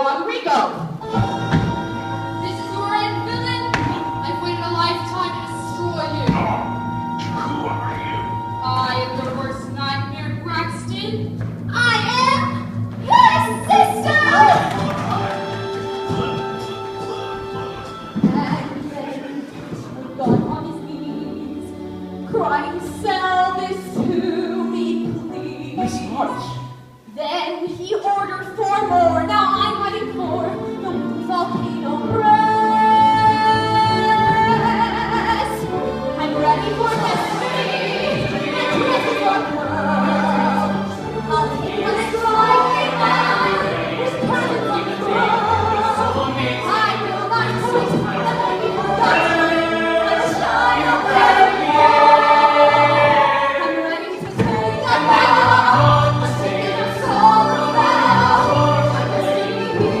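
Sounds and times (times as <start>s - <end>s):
musical accompaniment: 0.8s - 60.0s
woman singing: 18.2s - 49.5s.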